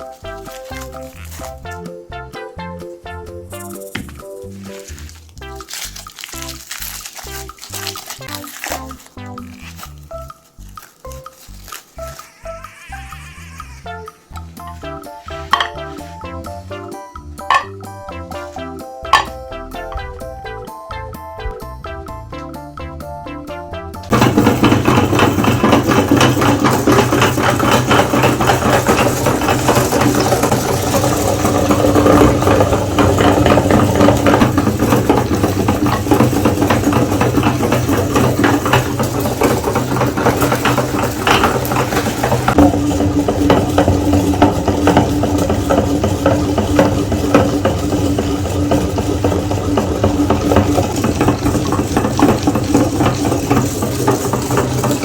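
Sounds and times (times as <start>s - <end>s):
electric meat grinder rattling: 0.0s - 1.9s, 3.5s - 19.4s, 24.0s - 55.0s.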